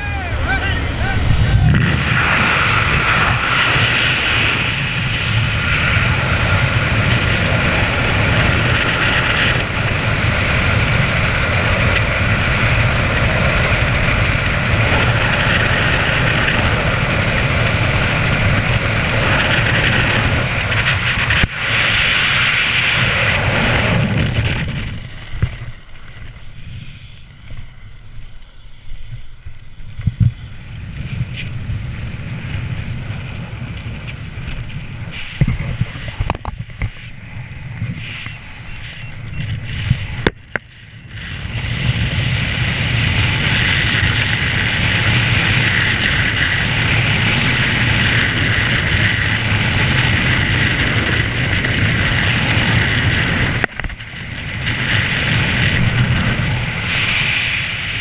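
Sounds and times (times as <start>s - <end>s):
rushing roar of air and engine: 0.0s - 58.0s
wind buffeting microphone: 0.0s - 58.0s.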